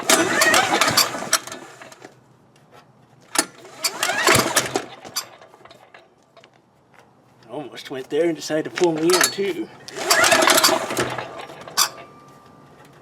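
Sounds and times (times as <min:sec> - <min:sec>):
recoil starter rope pull: 0:00.0 - 0:02.1, 0:03.4 - 0:06.0, 0:08.8 - 0:12.1
diesel engine spinning with whir: 0:00.0 - 0:02.2, 0:03.4 - 0:06.0, 0:09.8 - 0:13.0.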